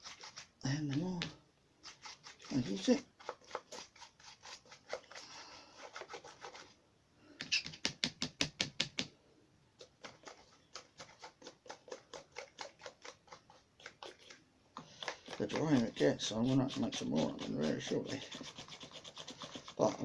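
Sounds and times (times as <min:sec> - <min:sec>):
paintbrush scratching a surface: 0:00.0 - 0:06.8, 0:09.9 - 0:20.0.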